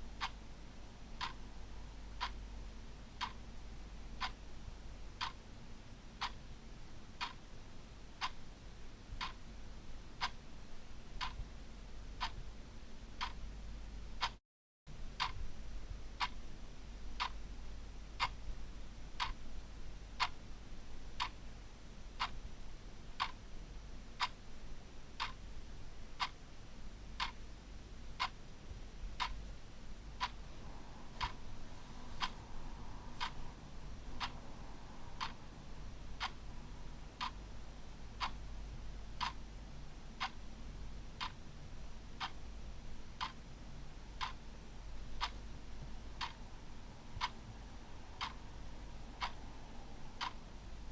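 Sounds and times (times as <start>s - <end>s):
faint low hum: 0.0s - 50.9s
mechanical clock ticking: 1.2s - 1.5s, 2.2s - 2.4s, 3.2s - 3.4s, 4.2s - 4.4s, 5.2s - 5.4s, 7.2s - 7.5s, 9.2s - 9.4s, 11.2s - 11.4s, 13.2s - 13.4s, 15.2s - 15.4s, 16.2s - 16.4s, 20.2s - 20.4s, 21.2s - 21.4s, 23.2s - 23.4s, 25.2s - 25.4s, 27.2s - 27.4s, 28.2s - 28.4s, 30.2s - 30.4s, 31.1s - 39.6s, 40.2s - 41.4s, 42.1s - 42.4s, 43.2s - 43.4s, 44.1s - 44.4s, 45.2s - 50.5s.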